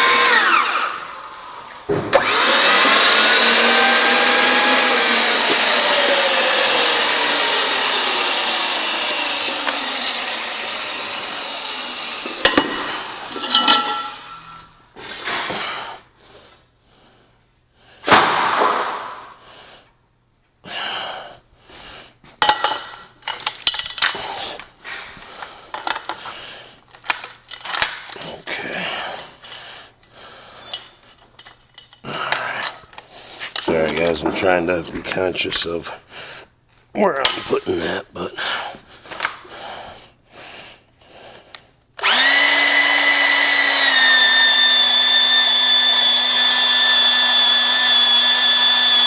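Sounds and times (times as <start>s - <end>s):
power tool motor winding down: 0.0s - 14.8s, 42.0s - 49.0s
metal clanks and clinks: 12.4s - 14.7s, 22.4s - 24.6s, 26.9s - 30.1s, 30.7s - 35.2s.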